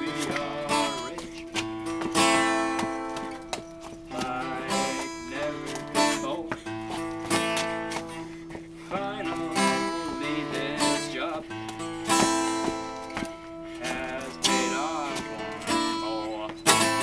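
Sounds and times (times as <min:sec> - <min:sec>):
acoustic guitar strummed and plucked: 0:00.0 - 0:17.0.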